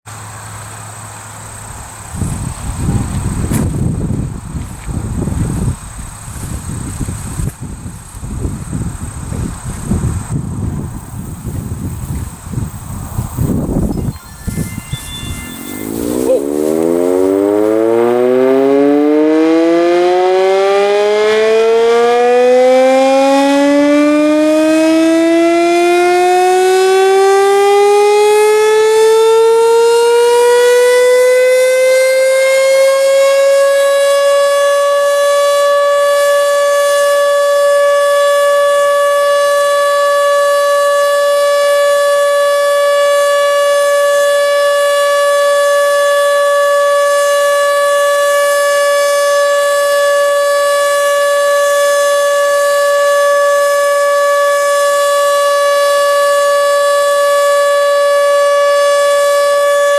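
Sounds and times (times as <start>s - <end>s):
warning siren winding up: 13.3s - 59.9s.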